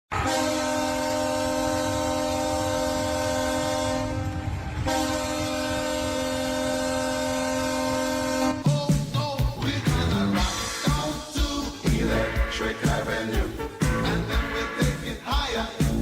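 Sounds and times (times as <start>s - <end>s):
goal horn blasts: 0.1s - 8.7s.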